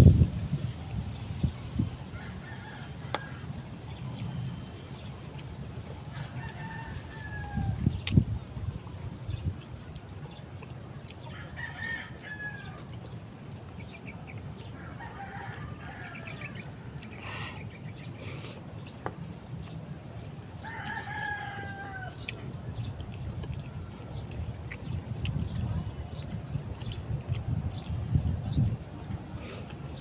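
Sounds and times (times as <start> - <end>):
rooster crowing: 20.6 - 22.2.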